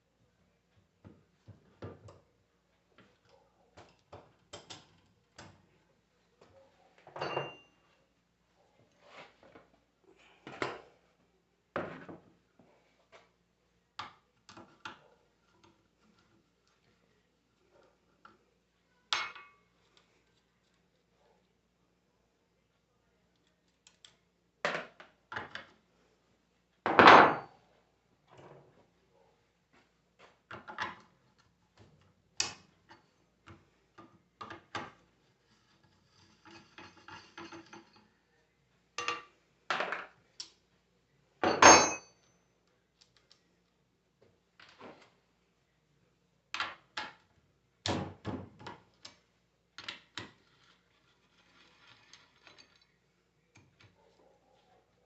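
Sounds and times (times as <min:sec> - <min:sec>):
metal tools and parts clinking: 0:07.1 - 0:07.8, 0:19.1 - 0:19.6, 0:36.1 - 0:38.0, 0:41.4 - 0:42.3.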